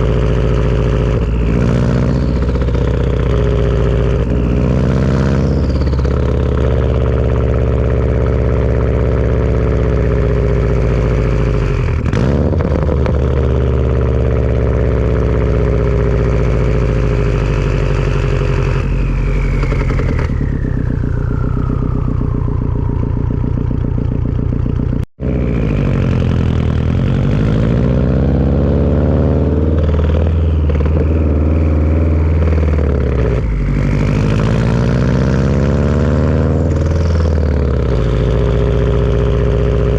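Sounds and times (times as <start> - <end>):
turbo whistle: 0.0 - 12.0, 16.1 - 24.3
turbocharged engine revving: 0.0 - 39.9.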